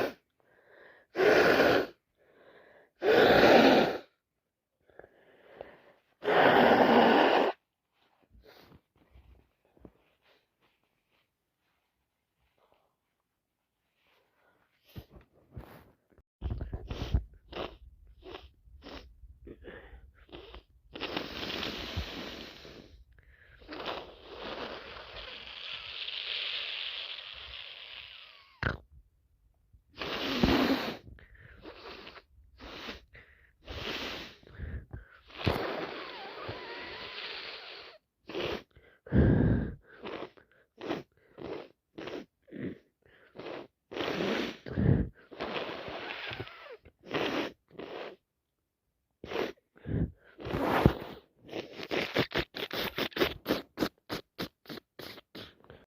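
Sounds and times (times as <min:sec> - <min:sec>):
person sniffing: 0:00.0 - 0:00.2, 0:01.0 - 0:02.0, 0:02.9 - 0:04.2, 0:05.5 - 0:07.6, 0:14.0 - 0:28.8, 0:30.0 - 0:48.2, 0:49.2 - 0:55.9
person blowing congested nose: 0:00.0 - 0:00.3, 0:01.0 - 0:04.2, 0:05.4 - 0:07.6, 0:16.4 - 0:28.8, 0:30.0 - 0:48.2, 0:49.2 - 0:55.9.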